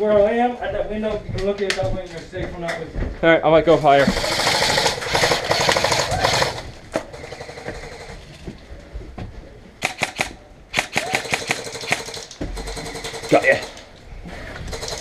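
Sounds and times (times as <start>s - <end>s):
airsoft rifle firing bursts: 4.1s - 8.2s, 9.8s - 13.8s, 14.7s - 15.0s.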